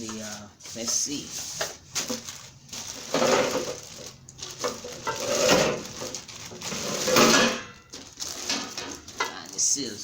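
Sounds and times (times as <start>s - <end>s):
metal grill parts clattering: 3.0s - 9.7s.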